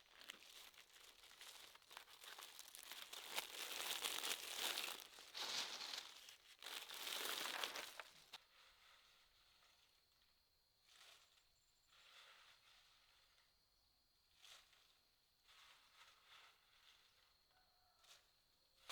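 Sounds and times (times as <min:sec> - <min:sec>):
crinkling rustling noise: 0:00.0 - 0:09.0.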